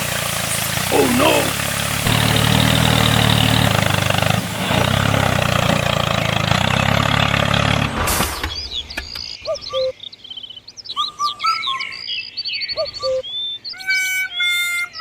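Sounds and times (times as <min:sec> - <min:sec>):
engine running: 0:00.0 - 0:08.6.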